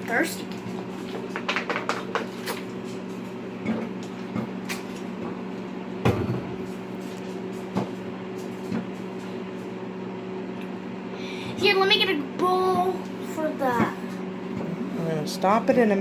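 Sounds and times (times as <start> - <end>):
popcorn popping: 0.0 - 2.8
microwave oven humming: 0.0 - 16.0.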